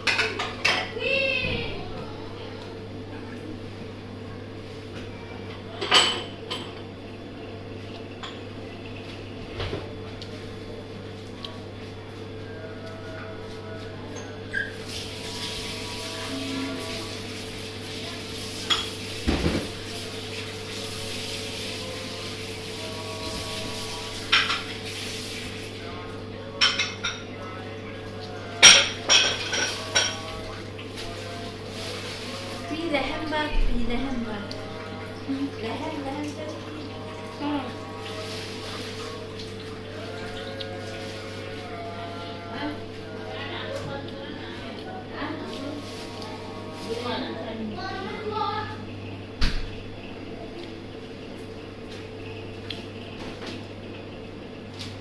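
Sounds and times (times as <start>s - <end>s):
dishes and cutlery clinking: 0.0s - 1.0s, 5.6s - 6.9s, 8.1s - 9.1s, 18.6s - 19.8s, 23.4s - 24.8s, 26.5s - 27.5s, 28.5s - 31.2s.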